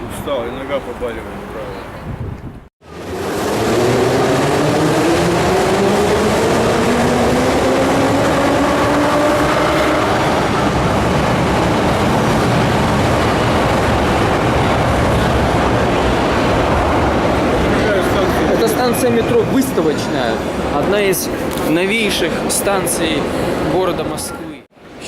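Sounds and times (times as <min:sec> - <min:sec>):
train running rumble: 0:02.9 - 0:18.8
train traction motors whining: 0:02.9 - 0:19.0.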